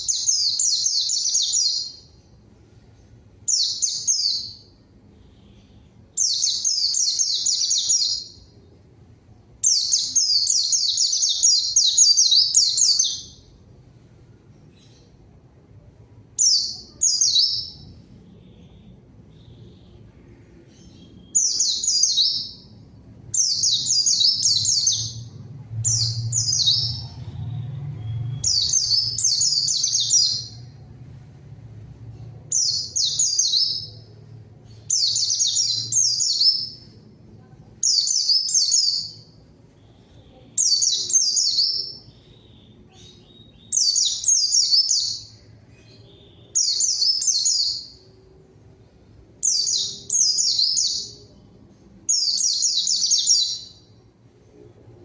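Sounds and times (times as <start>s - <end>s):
bird singing high twittering phrases: 3.4s - 8.6s, 9.6s - 13.5s, 16.4s - 18.0s, 20.6s - 30.8s, 49.4s - 51.4s, 52.1s - 53.9s.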